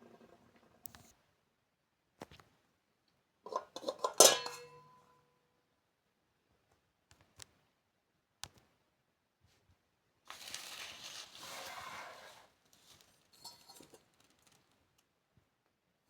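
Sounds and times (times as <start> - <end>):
rustling: 10.3 - 15.1.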